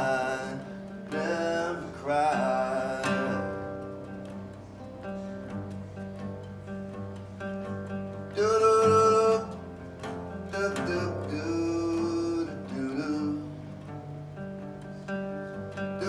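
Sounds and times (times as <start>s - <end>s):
person singing: 0.0s - 4.1s, 8.3s - 13.9s
acoustic guitar strumming: 0.0s - 16.0s.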